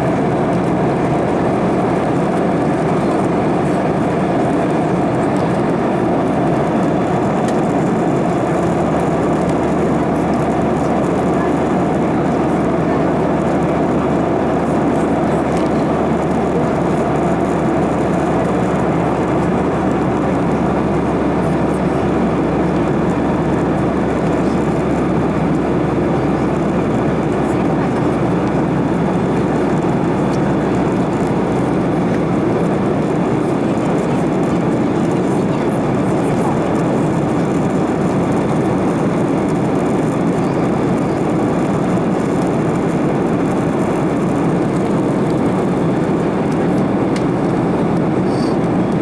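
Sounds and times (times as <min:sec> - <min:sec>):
vehicle rumbling: 0:00.0 - 0:49.0.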